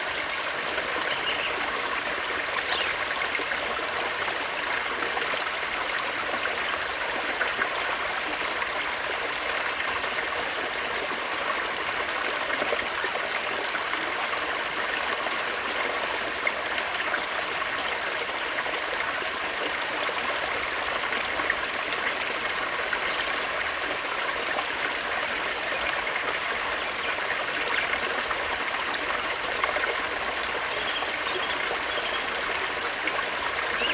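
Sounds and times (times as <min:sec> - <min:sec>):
stream trickling over stones: 0:00.0 - 0:33.9.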